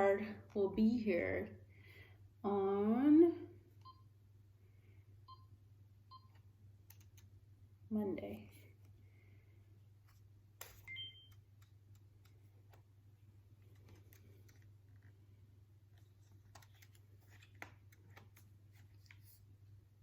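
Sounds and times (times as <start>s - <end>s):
two-tone electronic beep: 10.9s - 11.4s.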